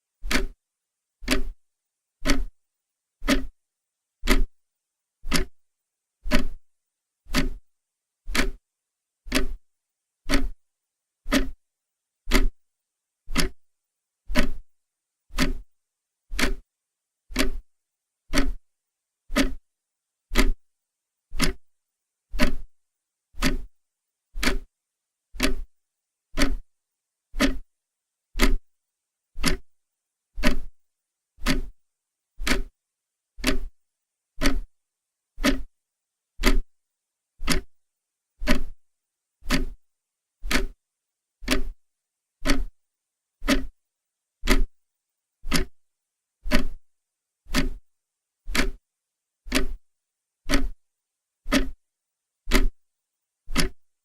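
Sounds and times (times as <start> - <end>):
clock ticking: 0.2 - 0.6, 1.2 - 1.6, 2.2 - 2.5, 3.2 - 3.5, 4.2 - 4.5, 5.3 - 5.6, 6.3 - 6.6, 7.3 - 7.6, 8.3 - 8.6, 9.3 - 9.6, 10.3 - 10.6, 11.3 - 11.6, 12.3 - 12.6, 13.3 - 13.6, 14.3 - 14.6, 15.3 - 15.6, 16.3 - 16.6, 17.3 - 17.6, 18.3 - 18.6, 19.3 - 19.6, 20.3 - 20.6, 21.4 - 21.6, 22.4 - 22.7, 23.4 - 23.7, 24.4 - 24.7, 25.4 - 25.7, 26.4 - 26.7, 27.4 - 27.6, 28.4 - 28.6, 29.4 - 29.6, 30.4 - 30.7, 31.4 - 31.7, 32.4 - 32.7, 33.4 - 33.7, 34.4 - 34.7, 35.4 - 35.7, 36.4 - 36.7, 37.4 - 37.8, 38.4 - 38.8, 39.4 - 39.8, 40.4 - 40.8, 41.4 - 41.8, 42.4 - 42.8, 43.4 - 43.7, 44.5 - 44.7, 45.5 - 45.8, 46.5 - 46.8, 47.5 - 47.8, 48.5 - 48.8, 49.5 - 49.8, 50.5 - 50.8, 51.5 - 51.8, 52.5 - 52.8, 53.5 - 53.8.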